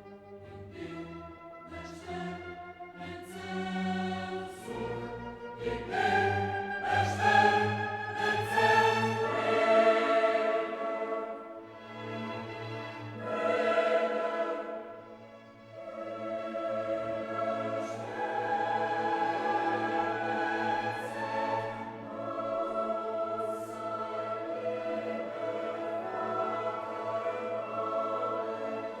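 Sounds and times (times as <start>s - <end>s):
choir singing sustained notes: 0.0s - 29.0s
orchestra: 0.0s - 29.0s.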